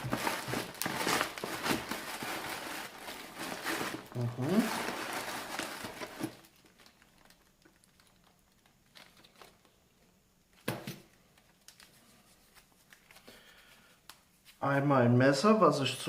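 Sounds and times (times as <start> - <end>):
packaging rustling: 0.0 - 9.8.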